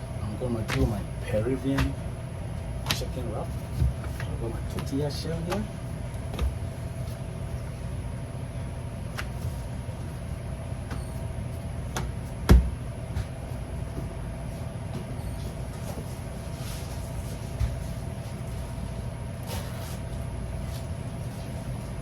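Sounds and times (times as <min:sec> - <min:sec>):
steady low hum: 0:00.0 - 0:22.0
food preparation taps and knocks: 0:11.9 - 0:13.3.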